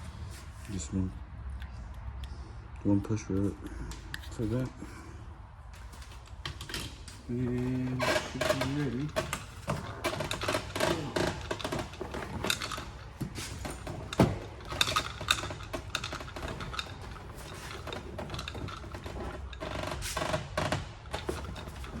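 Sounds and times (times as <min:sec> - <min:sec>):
panel rattling: 0:05.8 - 0:22.0.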